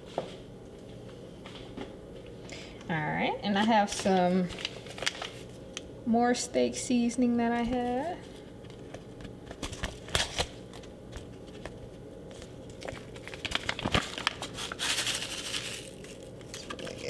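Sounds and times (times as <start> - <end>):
package crinkling and rustling: 3.9 - 5.6, 7.6 - 17.0.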